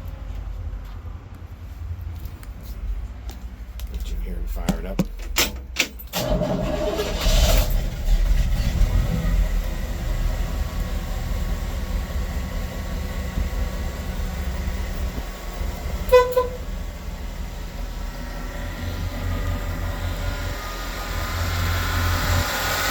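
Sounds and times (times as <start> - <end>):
engine starting and idling: 5.2 - 22.9
car horn toot: 16.0 - 16.8.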